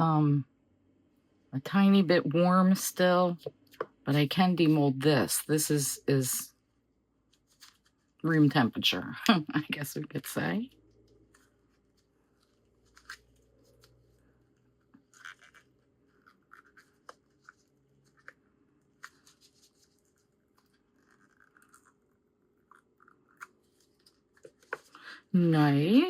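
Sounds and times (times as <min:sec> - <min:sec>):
resin pieces scratching in mold: 0:15.0 - 0:24.8.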